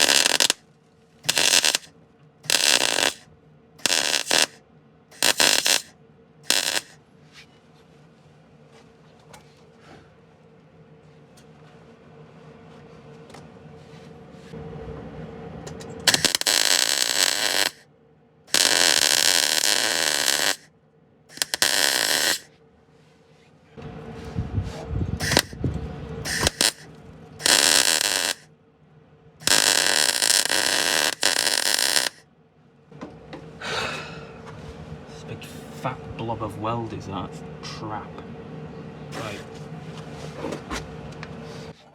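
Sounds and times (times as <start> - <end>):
crackling welding bursts: 0.0 - 0.6, 1.2 - 7.0, 16.0 - 17.8, 18.5 - 20.7, 21.3 - 22.5, 25.2 - 25.6, 26.2 - 28.5, 29.4 - 32.2.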